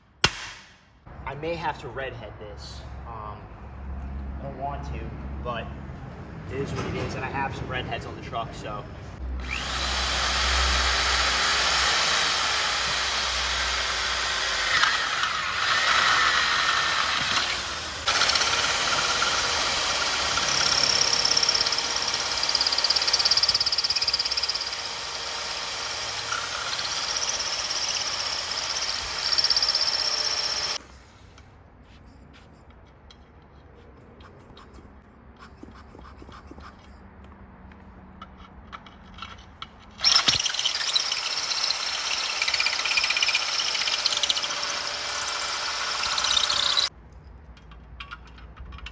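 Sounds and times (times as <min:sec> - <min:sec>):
power tool whining: 0:09.4 - 0:30.9, 0:40.0 - 0:46.9.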